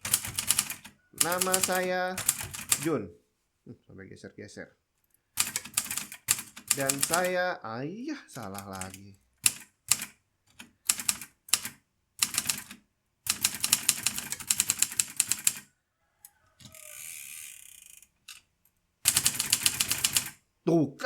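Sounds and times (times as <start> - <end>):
typewriter keys clacking: 0.0 - 2.9, 5.4 - 7.3, 8.4 - 15.6, 19.1 - 20.3.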